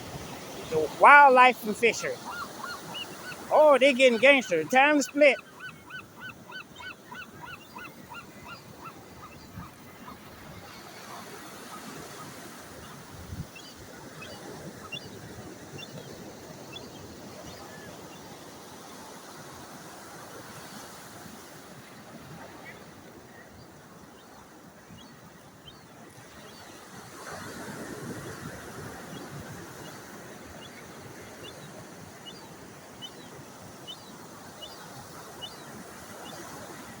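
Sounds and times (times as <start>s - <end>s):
surf: 0.0s - 23.6s
wind: 0.0s - 37.0s.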